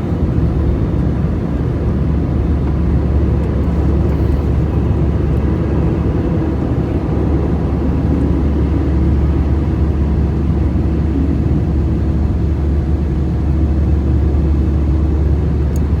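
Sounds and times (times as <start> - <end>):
jet engines rumbling: 0.0 - 15.6
deep hum: 3.1 - 13.6.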